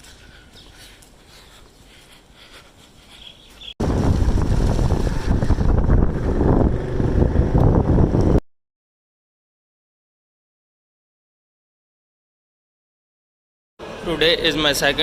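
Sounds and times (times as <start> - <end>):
wind buffeting microphone: 3.4 - 8.4.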